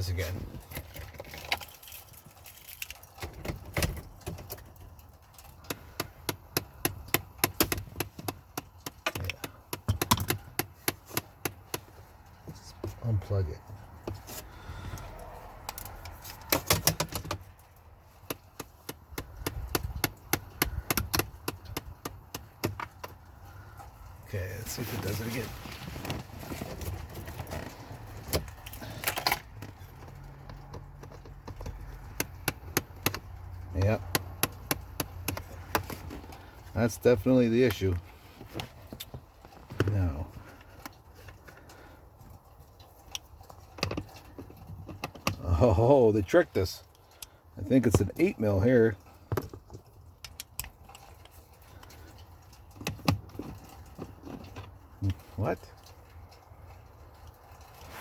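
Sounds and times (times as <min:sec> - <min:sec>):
sharp clicks and knocks: 0:00.8 - 0:13.0, 0:14.9 - 0:24.2, 0:27.2 - 0:45.4.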